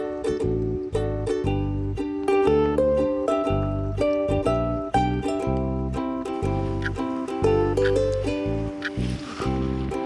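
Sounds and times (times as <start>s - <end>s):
plucked ukulele melody with beat: 0.0s - 10.0s.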